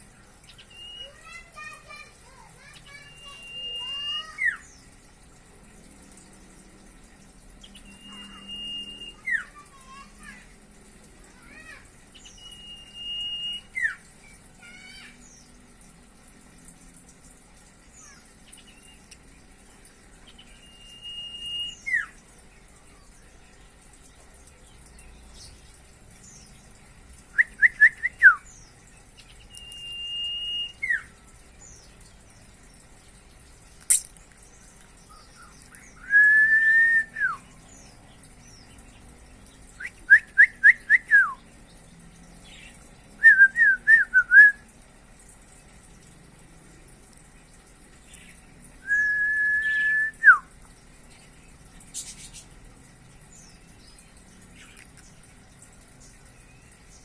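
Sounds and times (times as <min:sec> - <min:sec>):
bird singing whistles: 0:00.6 - 0:01.2, 0:03.0 - 0:04.6, 0:07.8 - 0:09.5, 0:12.2 - 0:14.0, 0:20.5 - 0:22.2, 0:27.3 - 0:28.5, 0:29.5 - 0:31.1, 0:35.8 - 0:37.5, 0:39.8 - 0:41.4, 0:43.2 - 0:44.6, 0:48.8 - 0:50.5
sharp click: 0:33.8 - 0:34.2.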